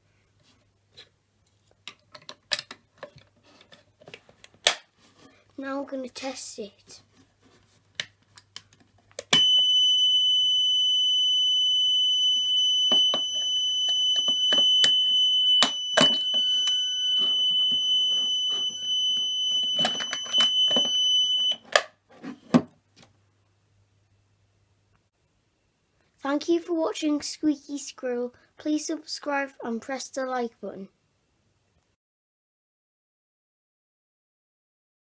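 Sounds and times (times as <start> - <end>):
high-pitched alarm buzzer: 9.4 - 21.6.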